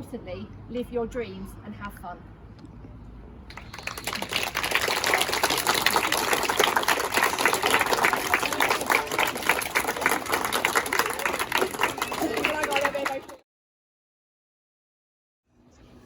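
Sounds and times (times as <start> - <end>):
children clapping: 3.5 - 13.4.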